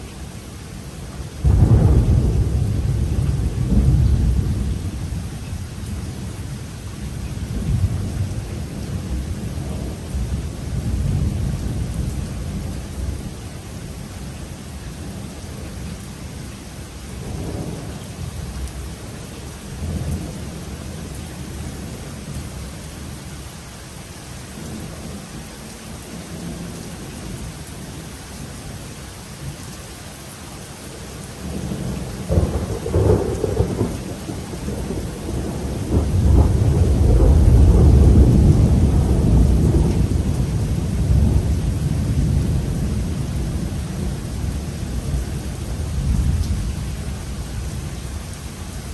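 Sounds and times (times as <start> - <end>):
steady rain: 0.0 - 48.9
deep roll of thunder: 1.4 - 5.2, 31.4 - 47.8.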